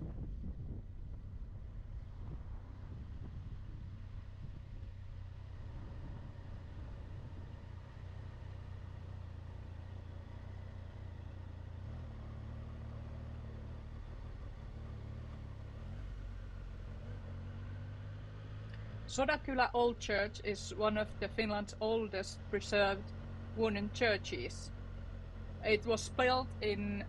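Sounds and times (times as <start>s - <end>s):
motorcycle engine running: 0.0s - 27.0s.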